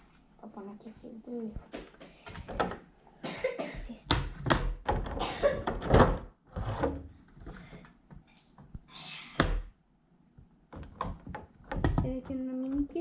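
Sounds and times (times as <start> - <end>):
plastic parts knocking and clicking: 1.7 - 2.9, 4.1 - 8.2, 10.7 - 13.0.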